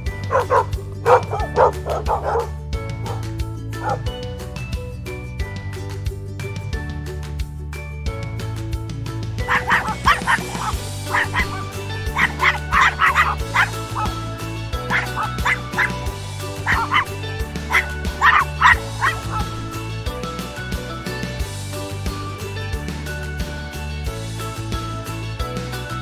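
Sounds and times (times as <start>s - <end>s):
background music: 0.0s - 26.0s
dog barking: 0.3s - 3.2s, 3.8s - 4.1s, 9.5s - 14.2s, 14.9s - 16.0s, 16.6s - 19.7s.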